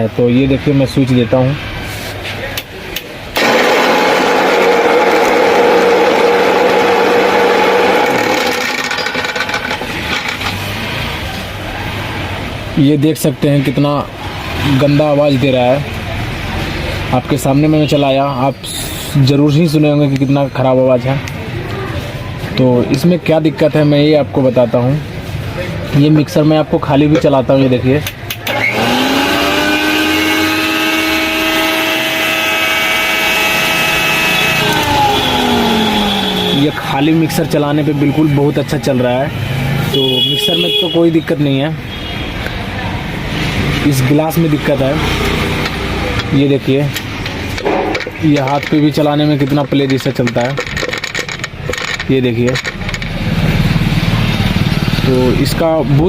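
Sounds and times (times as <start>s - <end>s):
mixer grinder motor hum: 3.4s - 10.4s, 28.5s - 37.2s
harsh rattling of grinder jar: 3.4s - 10.8s, 47.8s - 53.9s.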